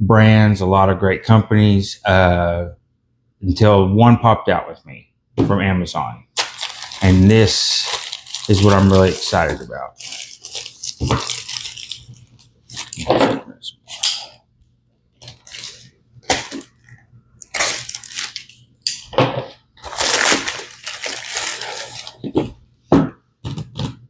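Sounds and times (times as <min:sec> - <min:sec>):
packaging rustling and crinkling: 0:06.4 - 0:13.2, 0:15.2 - 0:16.7, 0:17.4 - 0:18.7, 0:19.8 - 0:22.5.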